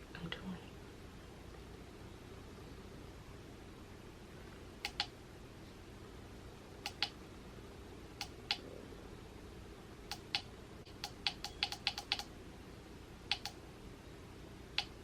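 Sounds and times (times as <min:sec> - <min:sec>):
alarm clock buttons clicking: 0:11.0 - 0:12.3.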